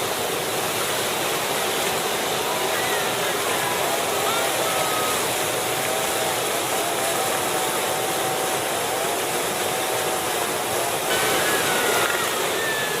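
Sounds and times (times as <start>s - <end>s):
river rapids rushing: 0.0s - 13.0s
faint voices calling out: 2.4s - 13.0s.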